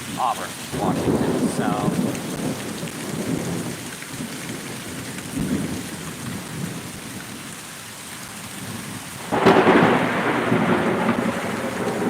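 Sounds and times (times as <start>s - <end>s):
thunder rumbling: 0.0s - 7.2s, 8.6s - 12.0s
steady rain: 0.0s - 12.0s.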